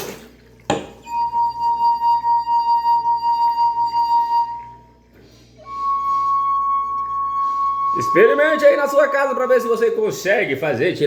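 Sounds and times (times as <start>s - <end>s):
wine glass clink: 0.7s - 1.1s
wine glass singing tone: 0.7s - 4.9s, 5.6s - 10.0s.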